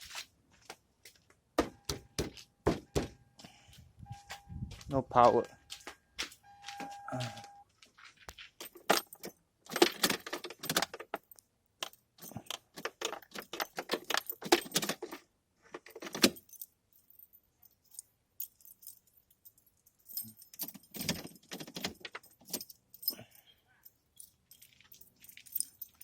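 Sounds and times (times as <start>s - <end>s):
metal objects jangling and clinking: 8.6s - 15.2s, 15.9s - 26.0s.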